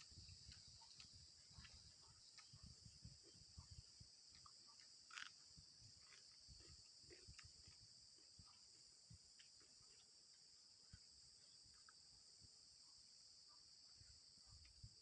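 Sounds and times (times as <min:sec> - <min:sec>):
crickets chirping: 0:00.0 - 0:15.0.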